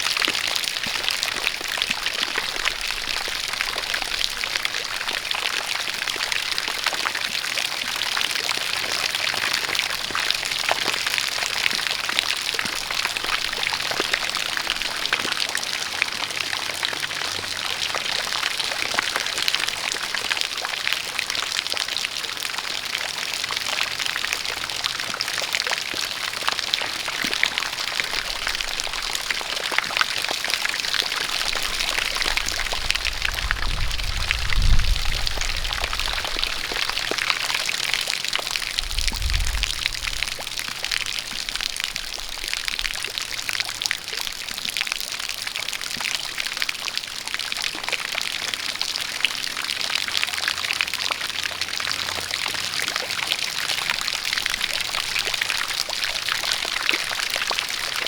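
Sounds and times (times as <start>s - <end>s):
rain falling: 0.0s - 58.0s
water pouring and splashing: 0.0s - 58.0s
low rumble: 32.6s - 36.4s, 38.6s - 40.8s.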